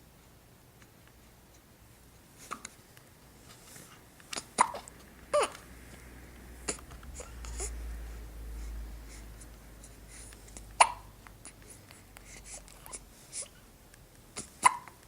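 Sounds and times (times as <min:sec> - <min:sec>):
baby hiccuping: 0:04.4 - 0:05.6, 0:10.8 - 0:11.2, 0:14.4 - 0:15.0.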